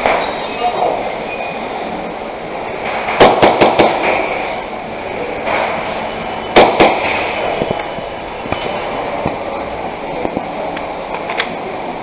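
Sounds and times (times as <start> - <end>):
blowback action clack: 2.8 - 4.4, 6.6 - 7.9
airsoft gun shots: 2.9 - 4.4, 6.6 - 7.4.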